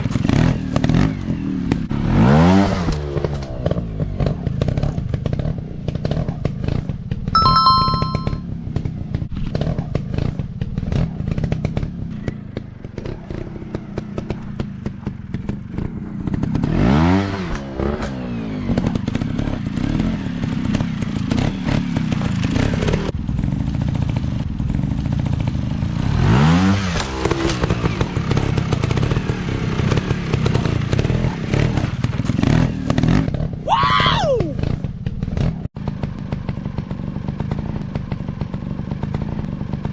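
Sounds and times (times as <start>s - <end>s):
short high-pitched beep: 7.4s - 8.4s.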